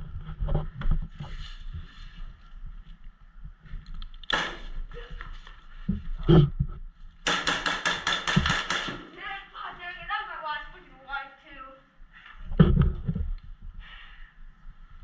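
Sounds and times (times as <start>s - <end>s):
airsoft gun full-auto burst: 7.3s - 9.1s.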